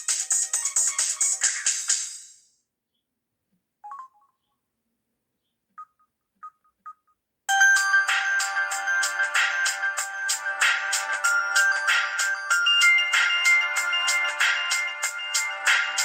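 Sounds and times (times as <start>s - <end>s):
multi-tone ringtone with beat: 3.8s - 4.5s, 5.8s - 16.0s
fast-pulsing phone ringtone: 7.5s - 16.0s.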